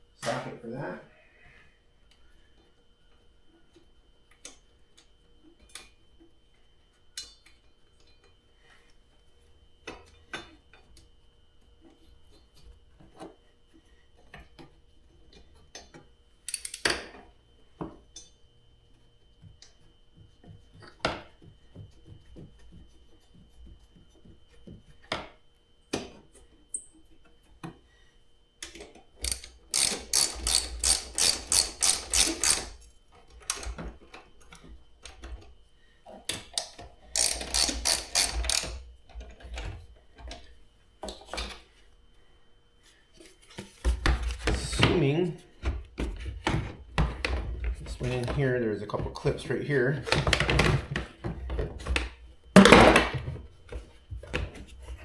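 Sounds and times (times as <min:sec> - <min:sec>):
ratchet wrench clicking: 0:16.5 - 0:16.9, 0:29.2 - 0:32.9, 0:37.2 - 0:38.8.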